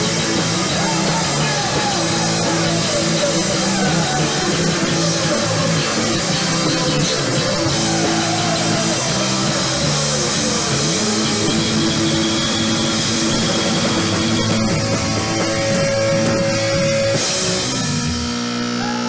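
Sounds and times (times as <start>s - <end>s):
rock band playing: 0.0s - 19.0s.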